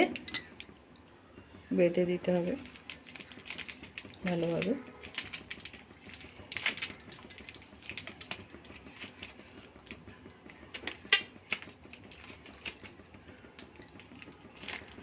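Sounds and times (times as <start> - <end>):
plastic packet crinkling: 2.6 - 10.0, 10.7 - 12.9, 13.6 - 15.0.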